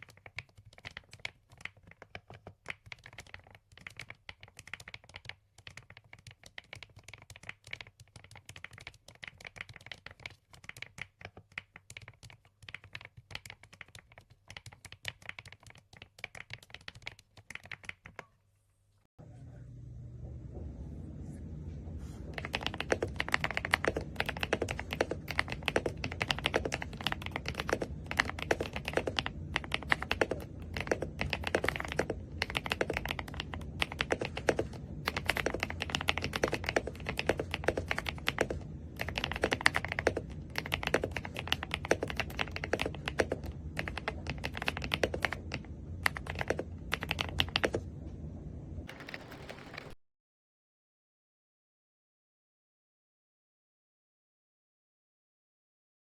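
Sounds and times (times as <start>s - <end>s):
steady low hum: 19.2s - 50.0s
mechanical keyboard keystroke clacks: 48.9s - 50.0s.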